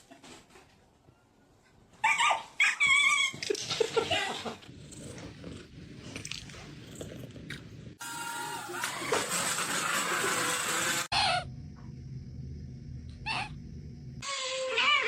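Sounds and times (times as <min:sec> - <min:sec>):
dog crying high-pitched: 0:02.0 - 0:03.4, 0:14.2 - 0:15.0
dog yelping and whimpering: 0:02.0 - 0:03.4.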